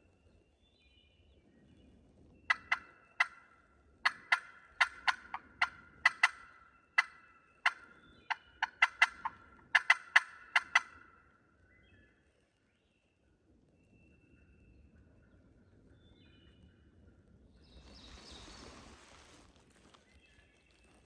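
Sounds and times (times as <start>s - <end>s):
turkey clucking and cutting: 2.5s - 11.2s.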